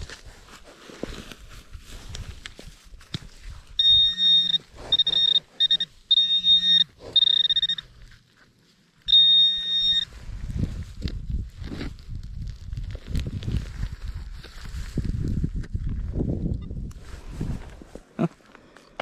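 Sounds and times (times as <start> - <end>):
rustling and scraping in soil: 0.0 - 18.8
metal detector beeping: 3.7 - 8.2, 9.0 - 10.2.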